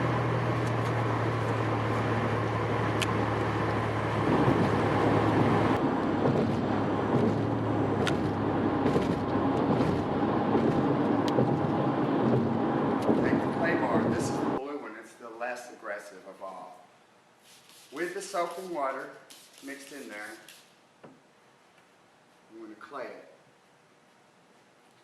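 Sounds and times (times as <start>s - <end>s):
vehicle hum: 0.0s - 14.6s.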